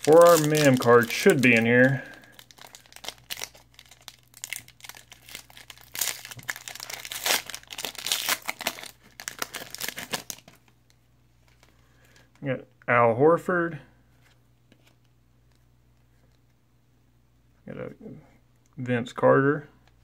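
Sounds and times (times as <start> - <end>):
wrapper crinkling and tearing: 0.0 - 10.7.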